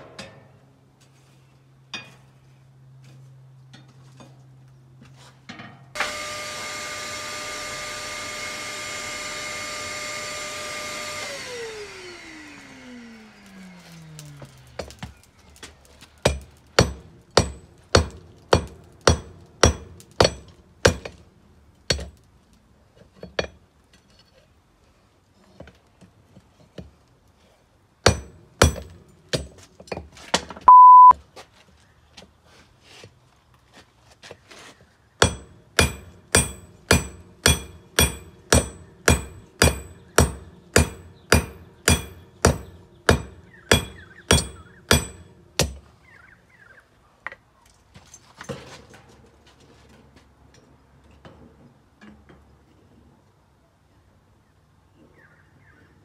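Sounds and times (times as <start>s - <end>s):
small electric motor whining: 6.0s - 14.7s
hammer striking anvil: 16.3s - 21.1s, 35.2s - 45.8s.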